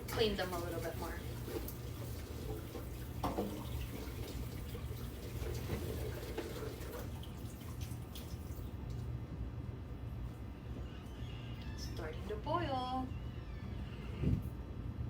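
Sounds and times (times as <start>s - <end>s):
kitchen tap running: 0.0s - 9.0s.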